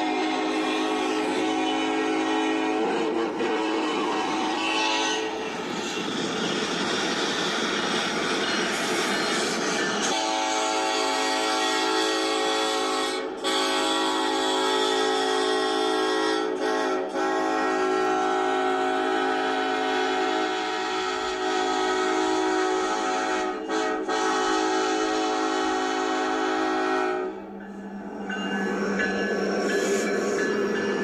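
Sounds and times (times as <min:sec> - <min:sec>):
locomotive air horn blasts: 0:00.0 - 0:05.4, 0:10.0 - 0:27.5.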